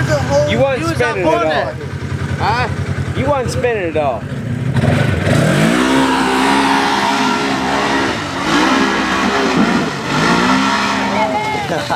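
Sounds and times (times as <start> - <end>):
engine revving hard: 4.5 - 11.9.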